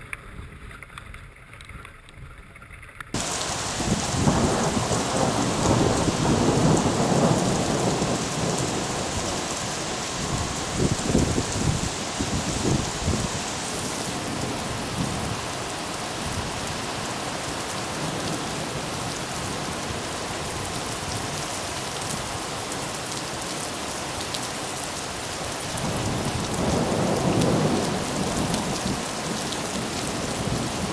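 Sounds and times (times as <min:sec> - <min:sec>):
steady rain falling: 0:03.1 - 0:30.9
low rumble of thunder: 0:03.2 - 0:15.5, 0:25.8 - 0:30.9.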